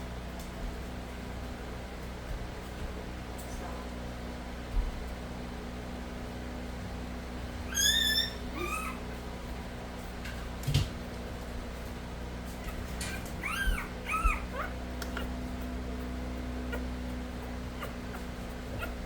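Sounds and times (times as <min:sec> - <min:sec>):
steady low hum: 0:00.0 - 0:19.0
puppy squealing: 0:07.6 - 0:09.2, 0:12.6 - 0:15.4, 0:16.6 - 0:17.0, 0:17.7 - 0:19.0.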